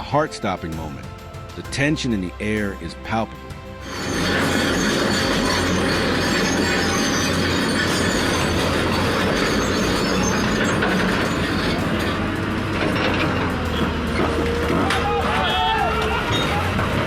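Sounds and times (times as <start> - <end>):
heavy machinery clattering: 3.8 - 17.0.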